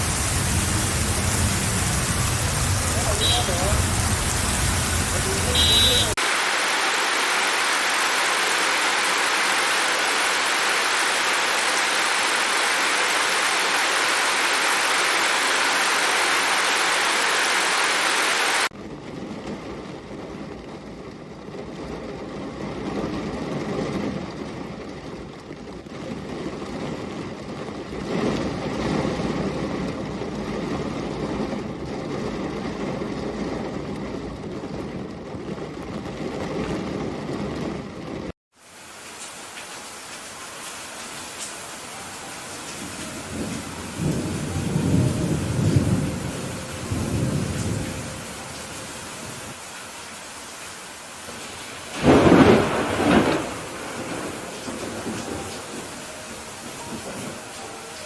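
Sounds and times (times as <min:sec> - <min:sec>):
heavy rain hissing: 0:00.0 - 0:18.7, 0:37.0 - 0:58.0.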